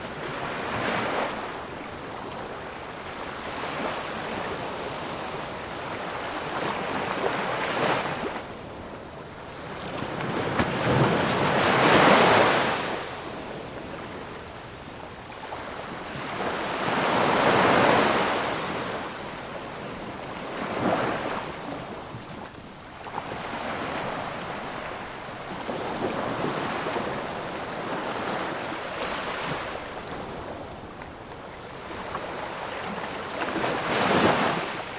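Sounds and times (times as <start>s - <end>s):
ocean waves breaking on shore: 0.1s - 34.9s.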